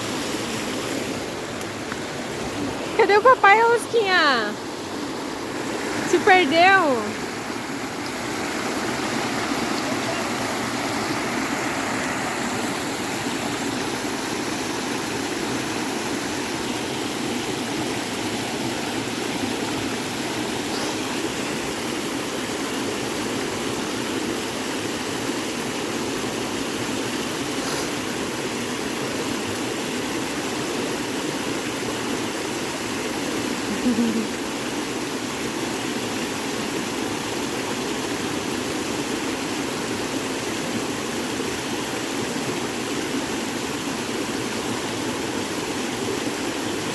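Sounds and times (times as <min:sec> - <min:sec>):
creek water rushing: 0:00.0 - 0:46.9.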